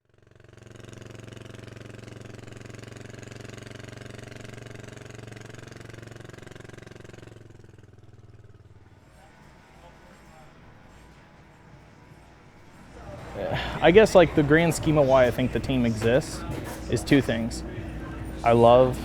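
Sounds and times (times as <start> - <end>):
motorbike engine idling: 0.1 - 19.0.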